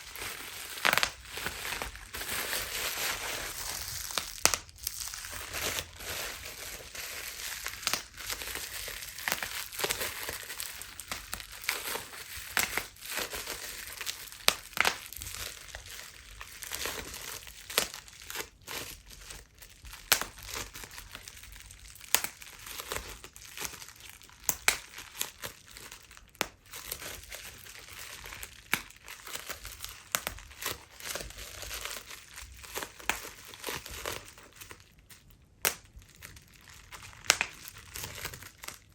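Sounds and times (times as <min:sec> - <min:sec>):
bubble wrap crinkling: 0:00.0 - 0:38.9
bubble wrap popping: 0:00.0 - 0:38.9.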